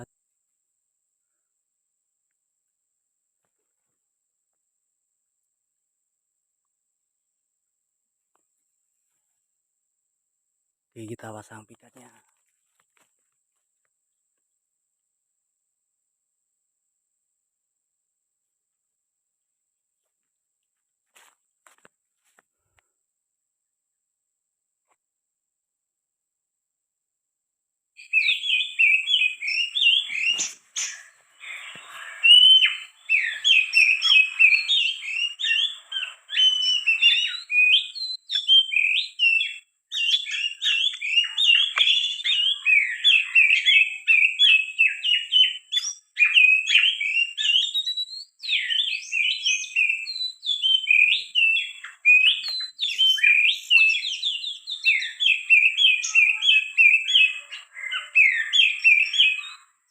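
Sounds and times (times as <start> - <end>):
bird whistles and chirps: 28.0 - 59.9.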